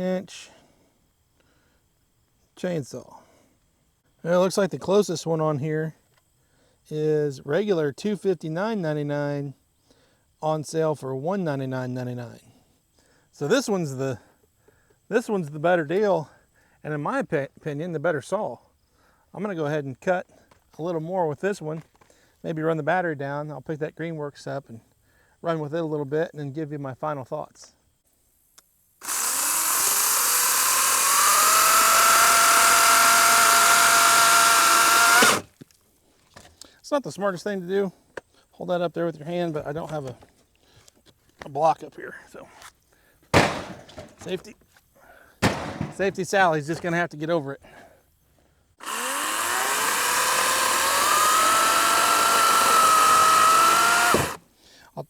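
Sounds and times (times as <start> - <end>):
chainsaw motor whine: 29.0 - 35.5, 48.8 - 54.4
chainsaw chain hissing: 29.0 - 35.6, 48.8 - 54.5.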